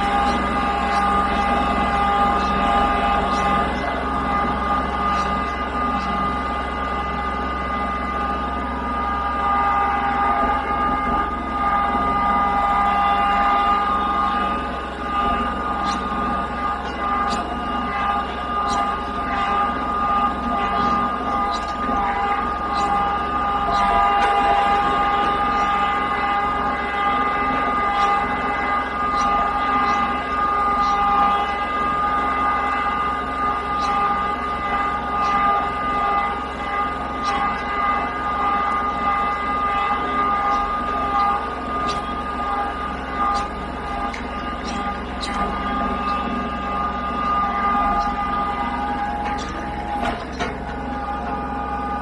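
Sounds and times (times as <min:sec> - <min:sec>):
high whine: 0:00.0 - 0:52.0
tractor engine running: 0:13.0 - 0:52.0.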